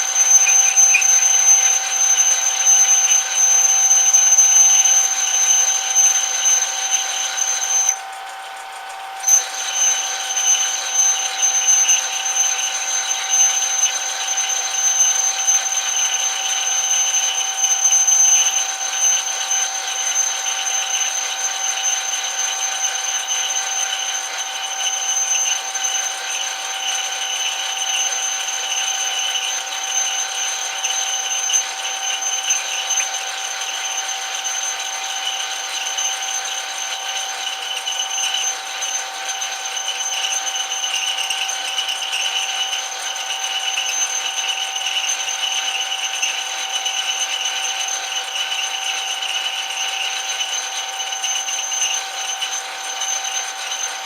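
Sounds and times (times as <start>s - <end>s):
metal lathe whining: 0.0s - 54.0s.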